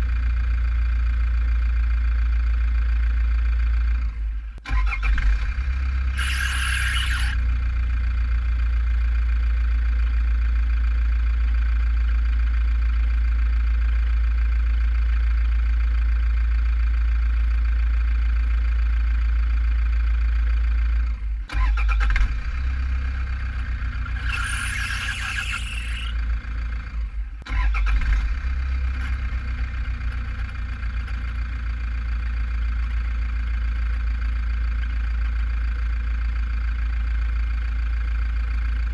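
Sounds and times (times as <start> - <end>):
diesel engine running: 0.0 - 38.9
drive belt squeal: 6.1 - 7.4, 23.7 - 26.3.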